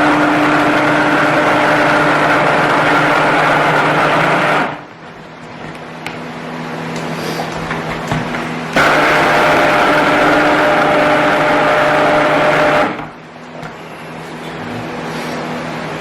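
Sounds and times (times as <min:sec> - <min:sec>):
stick blender running: 0:00.0 - 0:04.9, 0:08.7 - 0:13.2.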